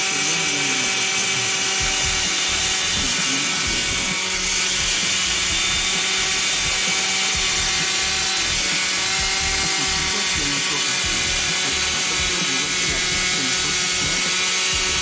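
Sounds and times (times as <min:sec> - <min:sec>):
concrete saw whining and grinding: 0:00.0 - 0:15.0.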